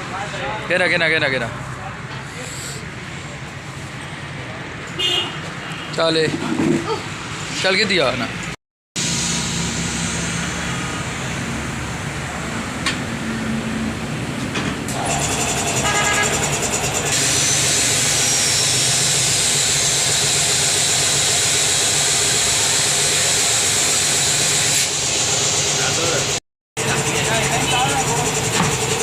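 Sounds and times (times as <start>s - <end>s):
loud air hiss: 2.3s - 2.8s, 9.0s - 10.8s
rapid mechanical rattle: 14.9s - 18.2s, 19.1s - 29.0s.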